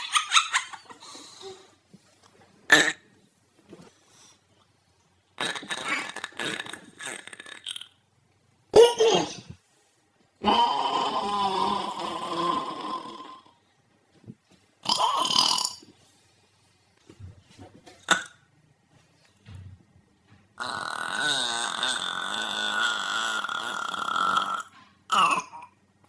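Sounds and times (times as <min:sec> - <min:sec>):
pitched-up burps: 0:02.7 - 0:03.1, 0:05.4 - 0:08.0, 0:14.8 - 0:15.9, 0:18.0 - 0:18.5, 0:20.6 - 0:25.8.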